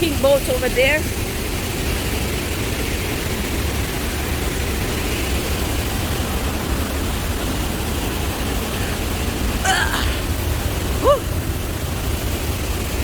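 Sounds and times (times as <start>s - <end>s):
waterfall rushing: 3.8s - 13.0s.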